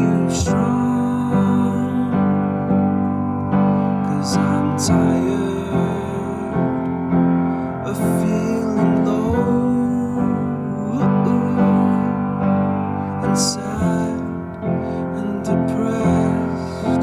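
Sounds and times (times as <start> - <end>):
slow song with keyboard chords: 0.0 - 17.0.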